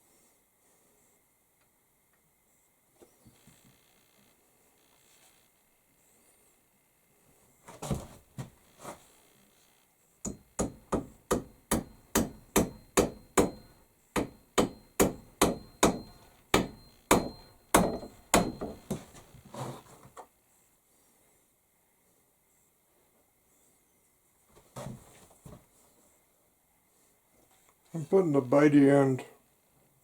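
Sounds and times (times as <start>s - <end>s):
hammer striking wedge: 10.3s - 19.1s.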